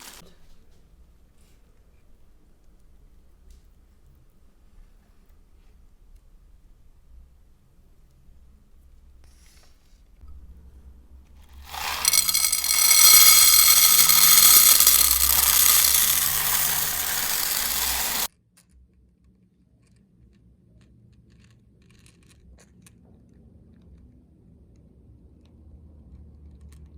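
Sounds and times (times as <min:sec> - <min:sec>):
grinder motor whining: 0:11.6 - 0:18.3.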